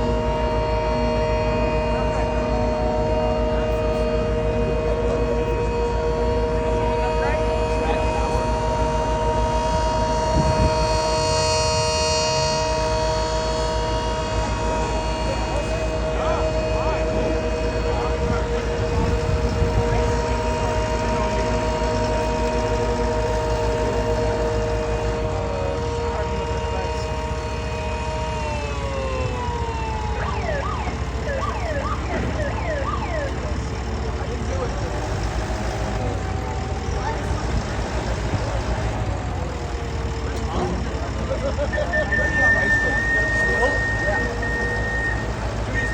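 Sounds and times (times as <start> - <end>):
mini sirens sounding: 0.0 - 45.9.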